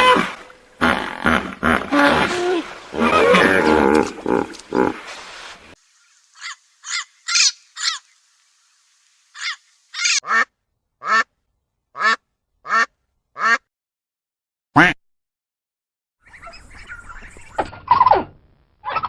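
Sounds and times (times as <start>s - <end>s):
macaw squawking: 6.4s - 8.1s, 9.4s - 10.4s.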